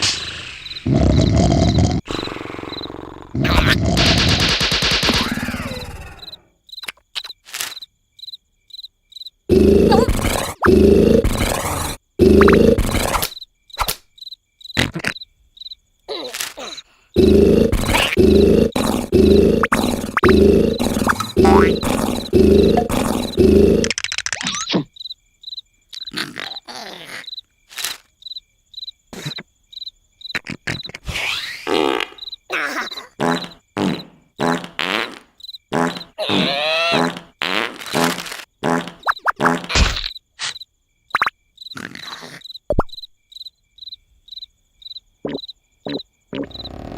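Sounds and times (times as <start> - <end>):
cartoon snoring: 0.0 - 4.5, 5.1 - 6.4, 9.5 - 13.3, 16.6 - 24.0, 26.1 - 27.3, 32.6 - 37.3, 41.8 - 42.4, 45.3 - 46.9
high cricket-like chirps: 0.0 - 46.9.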